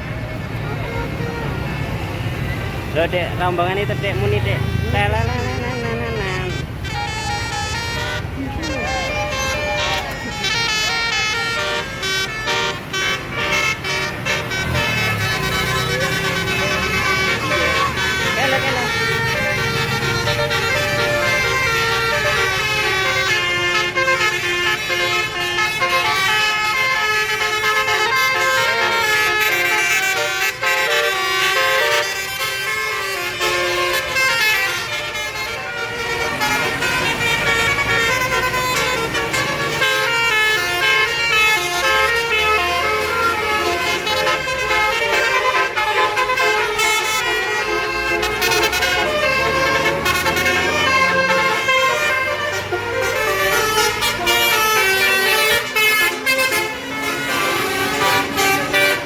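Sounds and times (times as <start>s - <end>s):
musical bus horn playing melody: 0.0s - 3.0s, 4.2s - 59.0s
low engine rumble: 0.0s - 30.3s.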